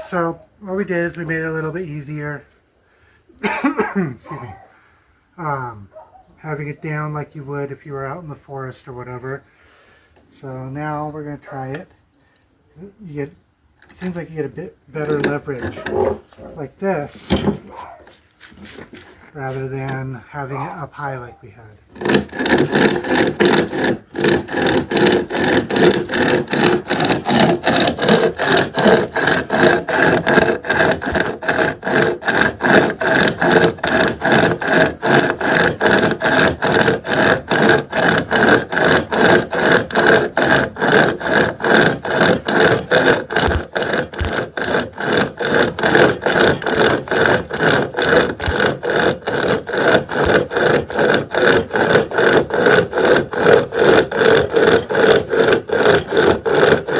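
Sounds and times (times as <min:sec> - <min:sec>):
pocket chainsaw rasping on wood: 0:00.0 - 0:02.5, 0:08.8 - 0:56.9.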